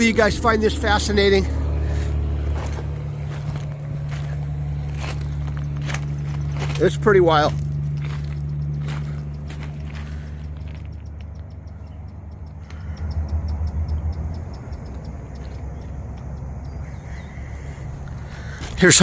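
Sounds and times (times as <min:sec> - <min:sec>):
passing vehicle engine rumble: 0:00.0 - 0:19.0
light ticks: 0:07.6 - 0:17.2.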